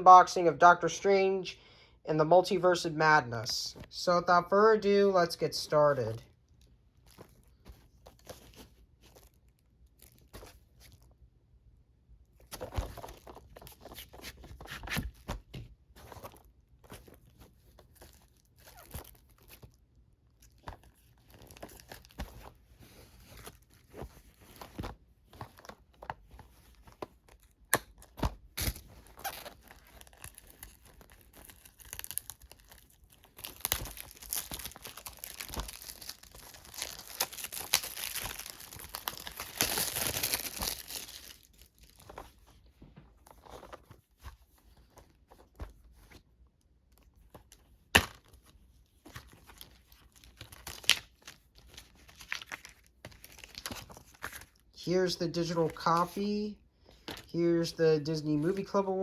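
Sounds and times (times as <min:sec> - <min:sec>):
plastic wrap tearing and crinkling: 0:16.1 - 0:19.8, 0:20.4 - 0:26.0, 0:26.7 - 0:42.4, 0:49.1 - 0:54.7.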